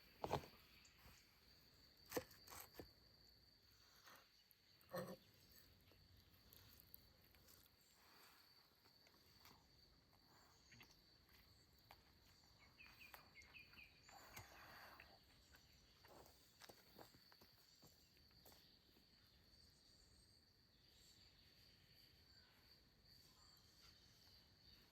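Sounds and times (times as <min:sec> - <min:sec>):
faint chirps: 0:03.6 - 0:24.9
faint ticks and rustles: 0:04.0 - 0:19.1.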